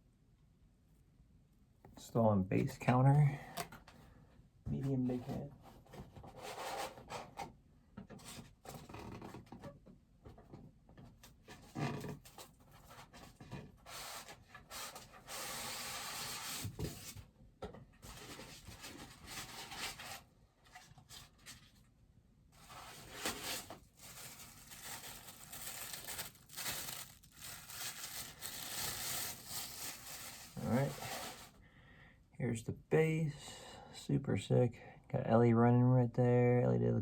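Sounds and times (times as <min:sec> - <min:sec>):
cardboard packaging rustling: 0:18.1 - 0:21.9, 0:22.6 - 0:31.6.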